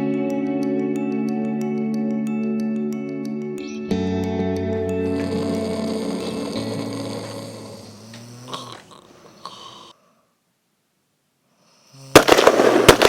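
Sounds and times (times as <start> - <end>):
background music: 0.0 - 8.4
man snoring loudly: 4.9 - 10.0, 11.8 - 12.3.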